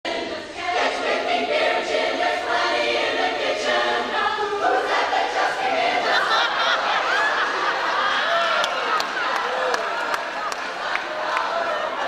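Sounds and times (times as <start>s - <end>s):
group singing a cappella harmony: 0.0s - 8.4s.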